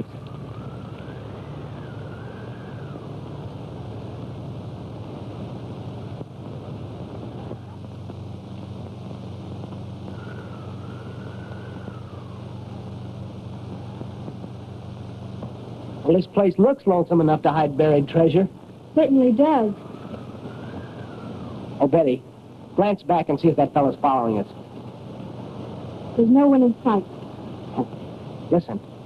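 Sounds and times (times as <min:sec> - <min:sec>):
storm wind howling: 0:00.0 - 0:16.2, 0:17.4 - 0:22.7
old film soundtrack hum and hiss: 0:00.0 - 0:29.0.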